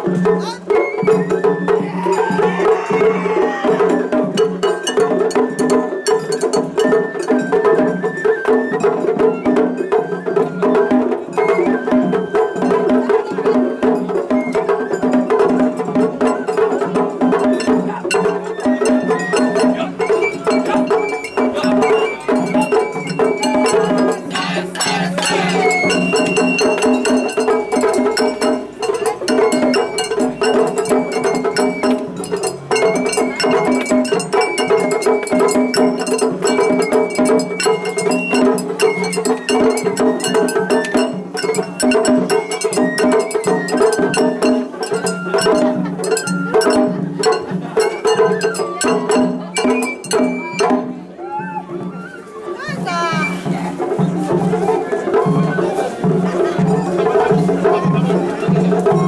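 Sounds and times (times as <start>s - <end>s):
bamboo flute melody: 0.0s - 59.0s
fast steady drumming: 0.0s - 59.0s
small metal gong clanging: 16.2s - 50.3s.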